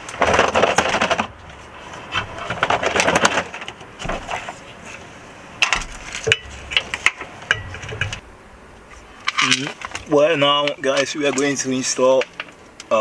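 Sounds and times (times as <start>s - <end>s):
metal car parts rattling: 0.0s - 5.0s, 5.6s - 8.2s, 9.1s - 12.6s
sharp clicks and knocks: 5.6s - 8.2s.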